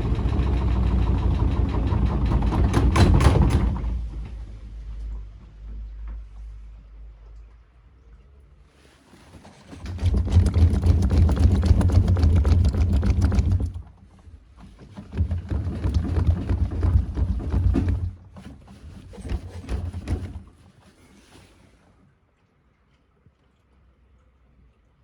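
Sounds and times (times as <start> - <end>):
washing machine rattling and knocking: 0.0 - 4.8, 9.5 - 20.6
washing machine spinning and rumbling: 0.0 - 21.4.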